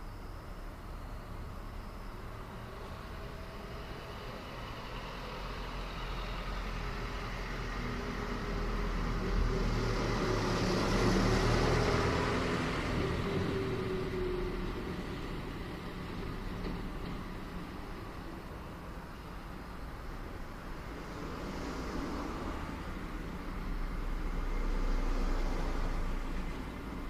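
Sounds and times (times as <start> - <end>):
vehicle driving past: 3.2 - 14.8, 20.9 - 27.0.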